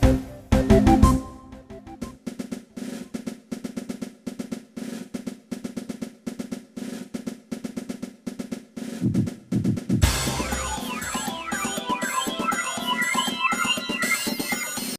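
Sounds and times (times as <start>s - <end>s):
snare drum rolls: 2.0s - 11.8s.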